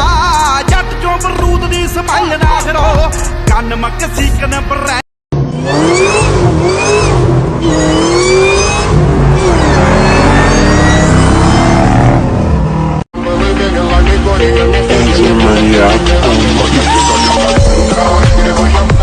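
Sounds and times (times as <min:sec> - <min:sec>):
car engine revving: 0:05.3 - 0:13.1.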